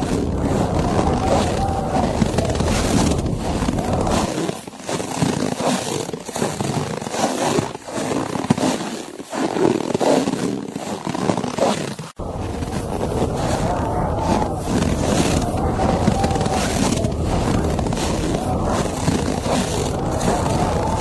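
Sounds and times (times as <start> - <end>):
wind rumbling: 0.0 - 4.3, 12.2 - 21.0.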